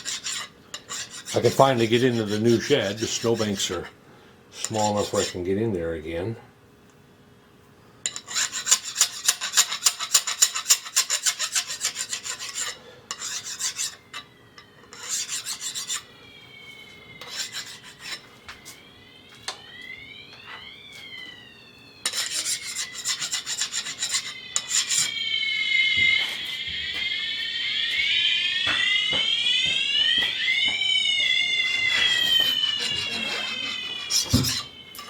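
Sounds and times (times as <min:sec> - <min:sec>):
hand strokes deburring metal: 0:00.0 - 0:03.9, 0:04.6 - 0:05.4, 0:08.1 - 0:14.0, 0:14.9 - 0:16.1, 0:17.2 - 0:18.3, 0:22.1 - 0:25.1, 0:31.6 - 0:35.0
electronic alarm tone sweeping: 0:13.3 - 0:35.0.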